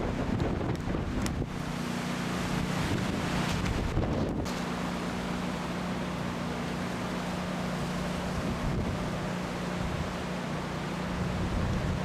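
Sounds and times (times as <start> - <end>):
wind buffeting microphone: 0.0 - 4.5, 8.2 - 10.3, 11.1 - 12.0.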